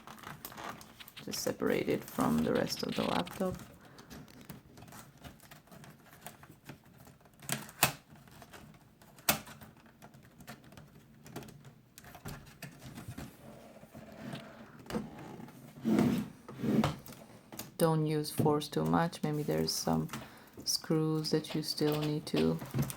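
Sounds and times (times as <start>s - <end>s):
light taps and handling noise: 16.8s - 22.9s.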